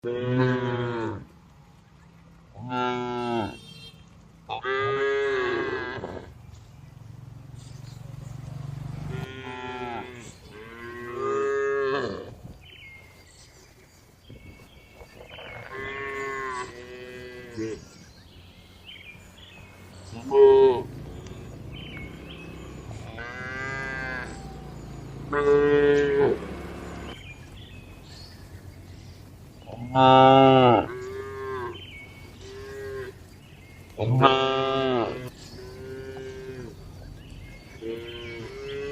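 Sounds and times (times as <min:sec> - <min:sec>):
cows mooing: 0:00.0 - 0:01.3, 0:02.6 - 0:03.6, 0:04.5 - 0:06.4, 0:09.1 - 0:12.4, 0:15.3 - 0:17.9, 0:20.1 - 0:27.2, 0:29.7 - 0:31.8, 0:32.4 - 0:33.3, 0:34.0 - 0:36.9, 0:37.7 - 0:38.9.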